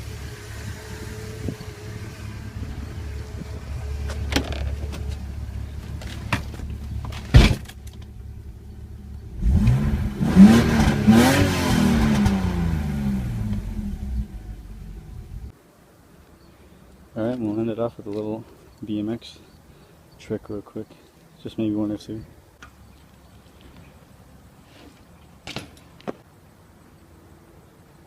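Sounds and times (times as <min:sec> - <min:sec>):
car engine rumbling and revving: 0:00.0 - 0:15.5.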